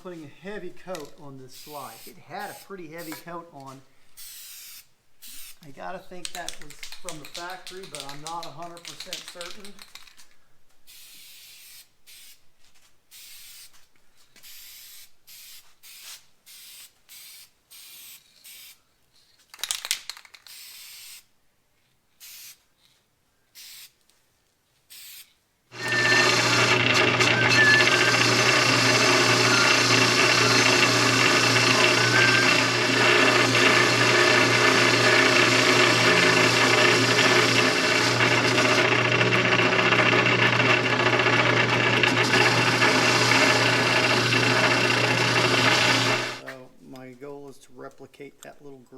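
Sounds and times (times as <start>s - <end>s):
power tool humming: 0.9s - 3.2s, 25.7s - 46.4s
spray can hissing bursts: 1.6s - 3.3s, 4.2s - 5.7s, 10.9s - 12.4s, 13.1s - 13.8s, 14.4s - 18.8s, 20.4s - 21.3s, 22.2s - 22.6s, 23.5s - 24.0s, 24.9s - 25.3s.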